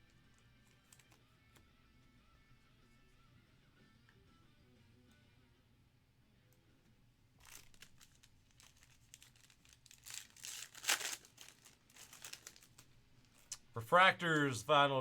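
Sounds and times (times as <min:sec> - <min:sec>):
wrapper tearing and crinkling: 0:07.4 - 0:13.6.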